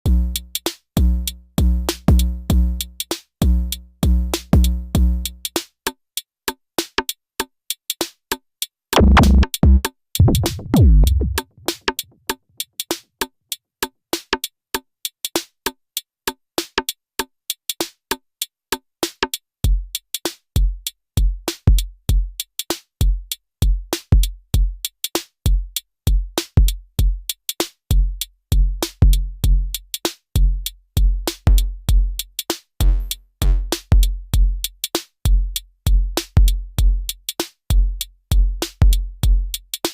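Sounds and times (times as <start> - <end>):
deep low synth hits: 9.0 - 11.6
crisp clicky drum hits: 9.0 - 11.8
kick drum: 9.0 - 11.8, 23.0 - 24.8, 27.9 - 29.7, 30.4 - 32.2, 32.8 - 34.6, 35.3 - 37.1, 37.7 - 39.6.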